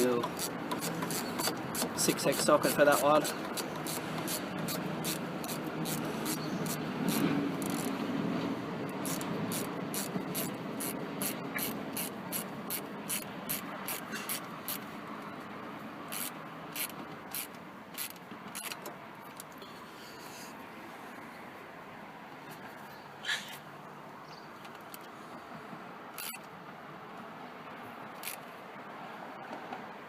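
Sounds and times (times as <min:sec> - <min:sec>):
socket ratchet clicking: 0:00.2 - 0:07.9, 0:08.9 - 0:14.8, 0:16.1 - 0:19.4, 0:26.2 - 0:26.4, 0:28.2 - 0:28.4.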